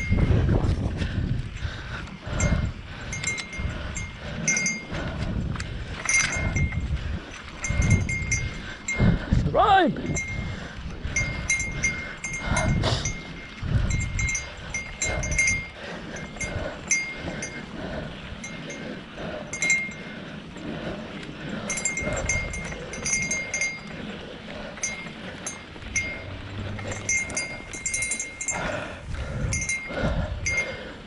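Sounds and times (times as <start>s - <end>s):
light metallic clinks: 2.4s - 4.9s, 5.6s - 9.0s, 11.2s - 17.6s, 19.5s - 20.0s, 21.5s - 24.1s, 24.8s - 30.8s
low rumble: 20.5s - 30.5s
small metal bell jingling: 21.7s - 23.9s, 24.8s - 28.8s.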